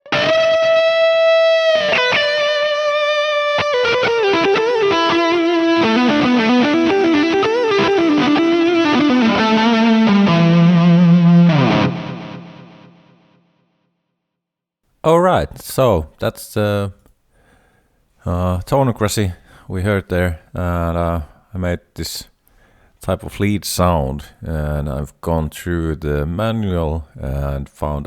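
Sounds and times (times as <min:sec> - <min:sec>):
distorted electric guitar: 0:00.0 - 0:13.4.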